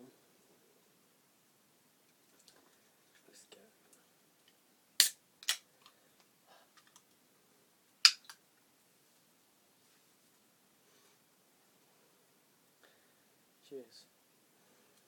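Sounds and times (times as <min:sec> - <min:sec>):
drink can clicking and snapping: 0:05.0 - 0:05.6, 0:08.0 - 0:08.4.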